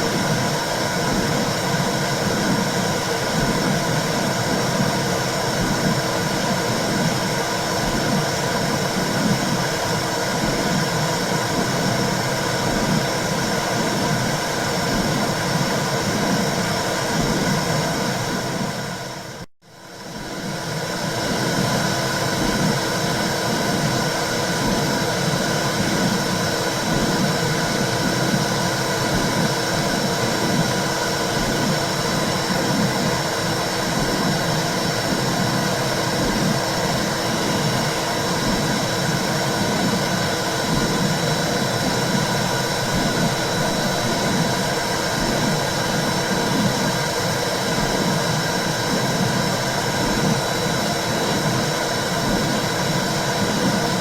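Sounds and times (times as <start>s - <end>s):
rhythmic pulsing throb: 20.4s - 54.0s.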